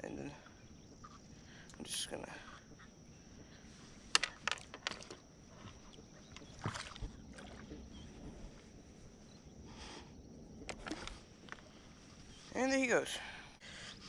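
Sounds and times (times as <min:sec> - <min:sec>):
handling and rustling: 0:03.8 - 0:08.8.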